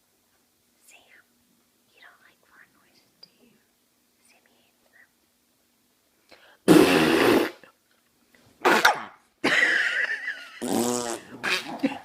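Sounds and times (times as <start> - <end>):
fake fart noise: 6.7 - 7.6, 8.6 - 9.2, 10.5 - 12.0
dog growling: 11.4 - 12.0.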